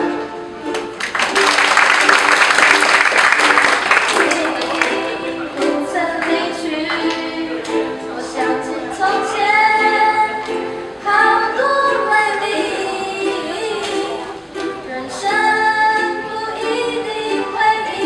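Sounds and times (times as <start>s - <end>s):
strummed ukuleles: 0.0s - 18.0s
group singing slow song: 4.2s - 18.0s.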